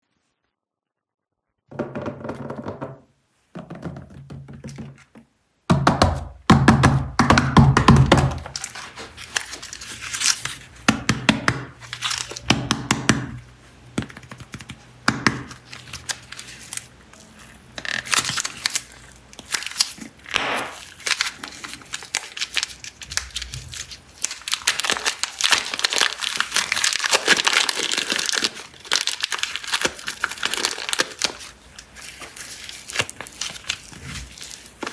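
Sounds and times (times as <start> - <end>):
plastic packaging crinkling and tearing: 8.4 - 10.9, 11.7 - 12.5, 14.3 - 34.9.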